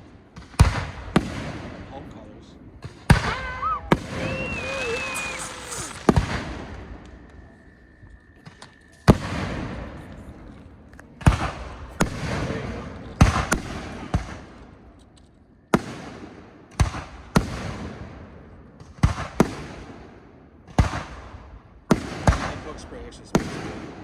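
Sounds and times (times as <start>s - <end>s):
fireworks bangs: 0.0s - 2.2s, 2.8s - 7.5s, 8.4s - 10.5s, 11.2s - 14.8s, 21.9s - 24.0s.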